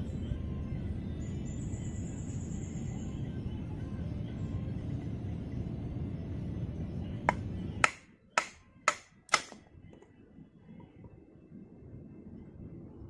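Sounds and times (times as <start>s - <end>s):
sharp knocks: 7.3s - 9.6s.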